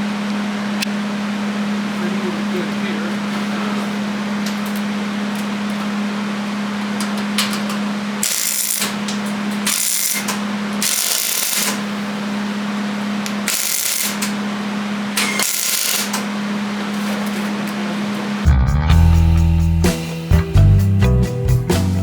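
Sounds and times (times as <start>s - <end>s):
steady low hum: 0.0s - 21.4s
welder crackle: 8.2s - 12.0s, 13.2s - 14.4s, 15.2s - 16.3s.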